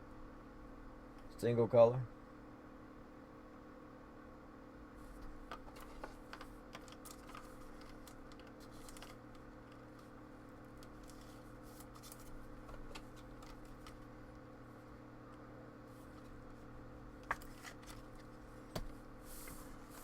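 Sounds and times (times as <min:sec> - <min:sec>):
steady low hum: 0:00.0 - 0:20.0
trading cards clicking and rustling: 0:05.4 - 0:10.0, 0:10.8 - 0:14.1.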